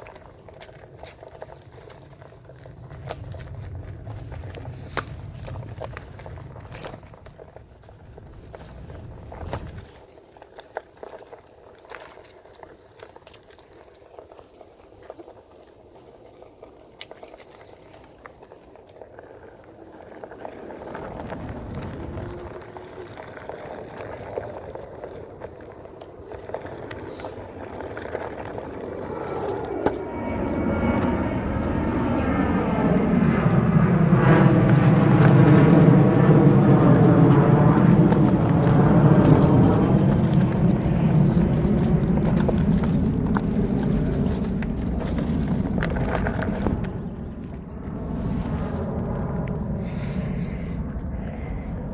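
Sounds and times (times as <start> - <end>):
jet aircraft flying over: 20.6 - 23.4, 26.0 - 51.9.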